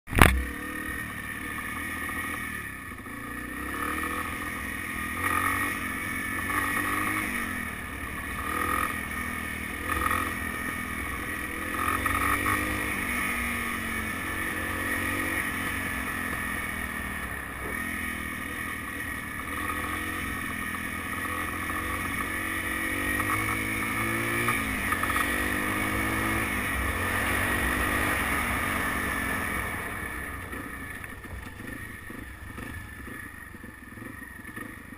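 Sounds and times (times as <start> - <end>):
motorcycle engine revving: 0.1 - 34.9
engine rattle: 7.7 - 34.9.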